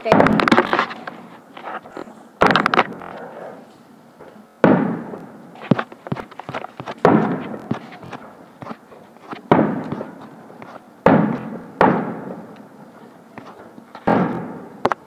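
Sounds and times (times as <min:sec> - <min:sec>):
fireworks exploding with echo: 0:04.6 - 0:05.6, 0:07.0 - 0:08.5, 0:09.4 - 0:12.9, 0:14.0 - 0:15.0.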